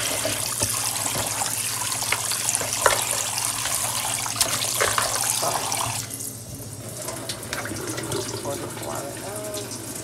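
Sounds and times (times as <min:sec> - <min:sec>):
tap water running: 0:00.0 - 0:10.0.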